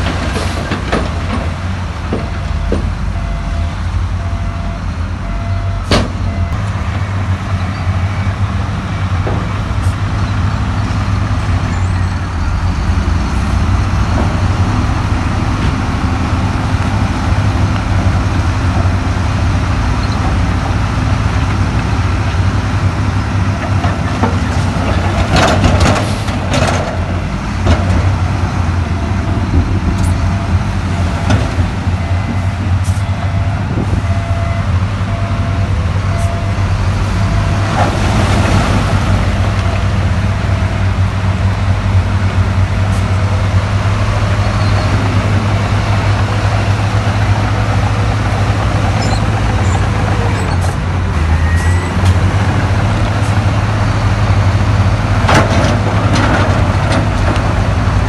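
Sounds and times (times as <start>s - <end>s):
diesel machinery engine drone: 0.0s - 58.0s
reversing alarm beeping: 2.2s - 6.6s, 31.9s - 37.7s.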